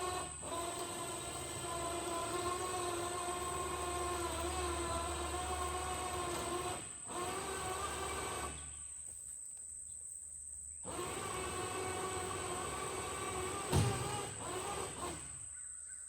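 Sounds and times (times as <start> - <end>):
machine engine whining: 0.0 - 8.7.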